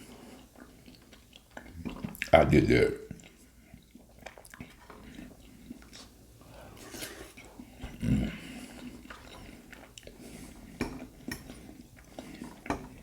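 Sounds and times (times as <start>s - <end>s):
chewing fried food: 0.0s - 2.4s, 3.0s - 13.0s
low vocal sound: 7.9s - 8.5s.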